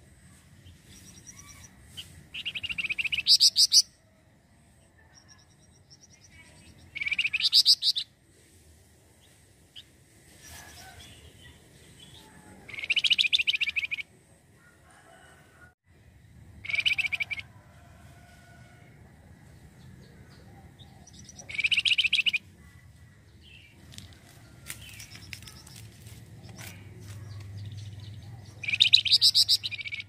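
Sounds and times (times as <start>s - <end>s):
songbird chattering trills: 2.4s - 3.9s, 5.2s - 8.1s, 12.1s - 14.0s, 16.6s - 17.4s, 20.0s - 22.5s, 24.8s - 30.0s.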